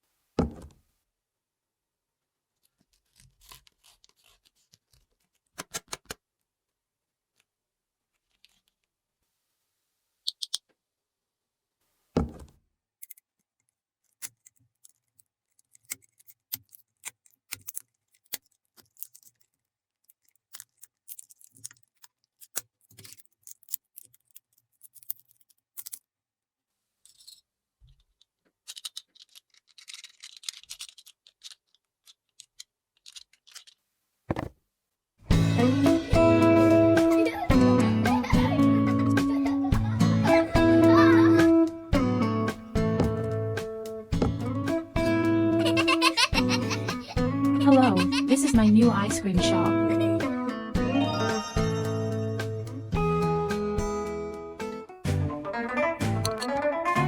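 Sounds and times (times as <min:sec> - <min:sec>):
rustling: 0:02.6 - 0:05.6, 0:27.0 - 0:34.6
toy pieces clicking and tapping: 0:05.6 - 0:06.2, 0:10.3 - 0:10.7, 0:13.0 - 0:26.0, 0:28.1 - 0:33.8.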